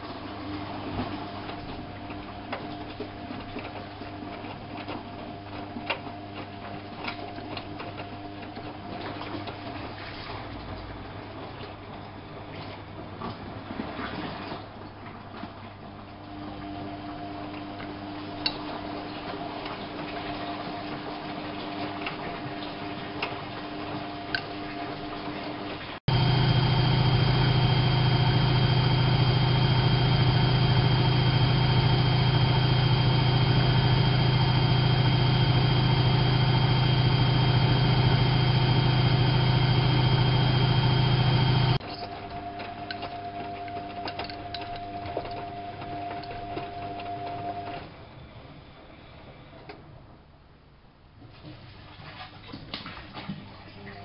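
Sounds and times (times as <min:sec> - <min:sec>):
washing machine water swishing: 0:25.0 - 0:41.8
loud hum with high whine: 0:26.1 - 0:42.6.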